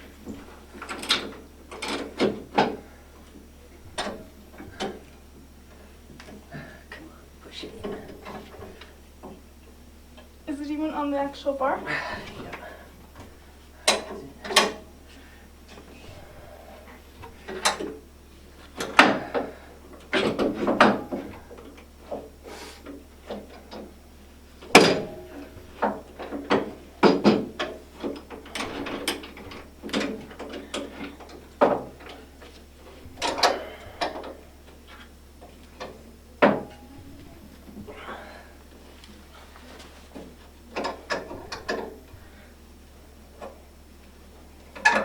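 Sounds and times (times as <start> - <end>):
metal clicks and clanks of tools: 24.7 - 31.3, 33.1 - 34.4.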